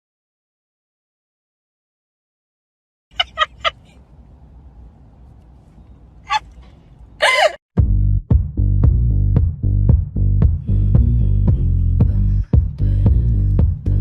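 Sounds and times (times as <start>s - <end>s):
animal sharp calls: 3.2s - 4.0s, 6.2s - 6.6s, 7.2s - 7.6s.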